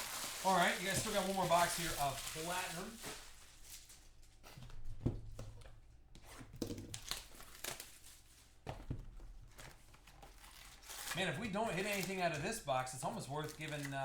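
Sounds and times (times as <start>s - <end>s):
packaging torn and crinkled: 0.0s - 4.4s, 6.6s - 8.5s, 9.5s - 14.0s.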